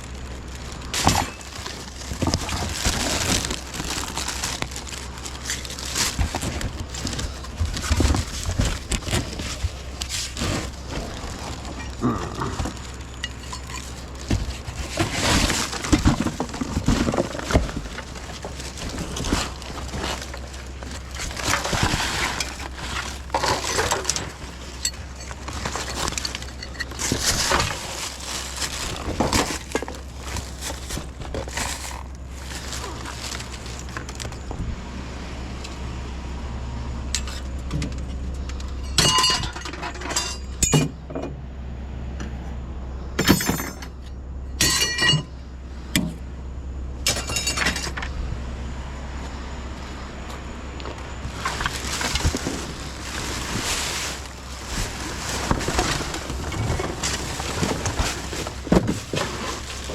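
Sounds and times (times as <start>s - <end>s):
low steady hum: 0.0s - 59.9s
scrap metal clattering: 0.9s - 34.4s, 38.4s - 41.0s, 51.2s - 59.9s.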